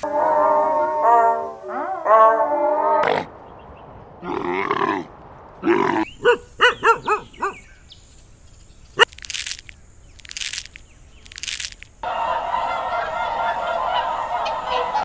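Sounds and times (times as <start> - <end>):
animal calls: 5.7 - 7.7.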